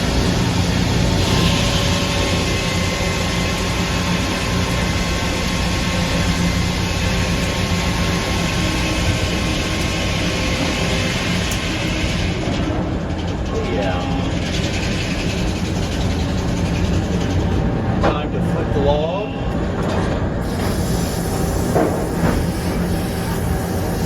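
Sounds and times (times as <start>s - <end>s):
saw cutting log: 0.0s - 12.4s, 20.4s - 24.0s
sawmill machine hum: 0.0s - 24.0s.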